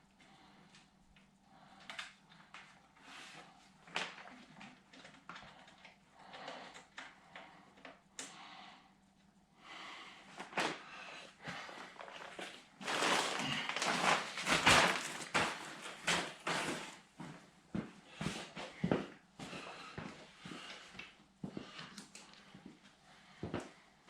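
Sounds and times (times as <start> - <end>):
rustling and scraping of tools: 10.2 - 23.8.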